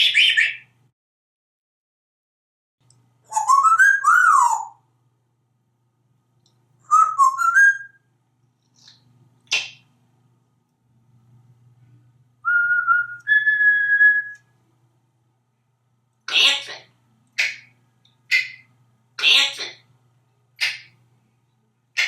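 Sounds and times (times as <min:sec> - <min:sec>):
parrot chirp: 0:00.0 - 0:00.8, 0:03.2 - 0:04.8, 0:06.8 - 0:08.0, 0:16.3 - 0:19.8, 0:20.6 - 0:21.0
parrot whistling: 0:03.3 - 0:04.8, 0:06.8 - 0:08.0, 0:12.4 - 0:14.4, 0:18.3 - 0:18.7, 0:20.6 - 0:20.9.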